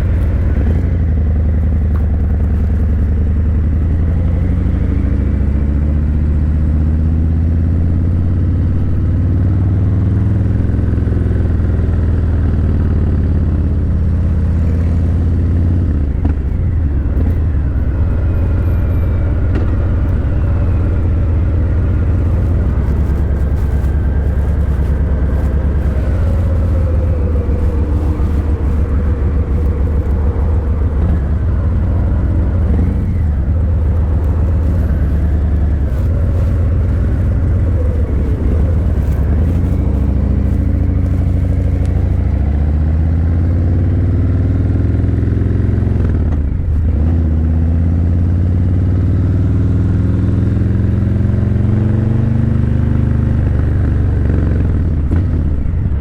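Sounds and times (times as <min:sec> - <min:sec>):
motorcycle engine rumbling: 0:00.0 - 0:56.0.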